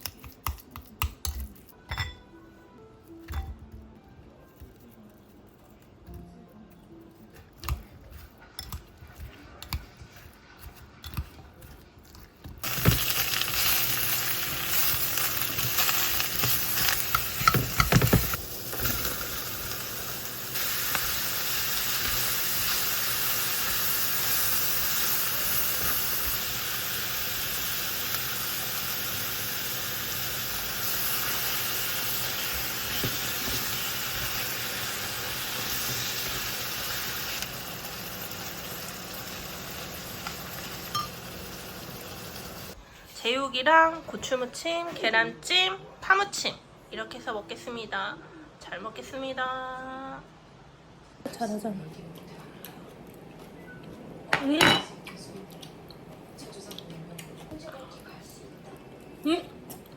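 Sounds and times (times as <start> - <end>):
food sizzling in a hot pan: 12.6 - 42.8.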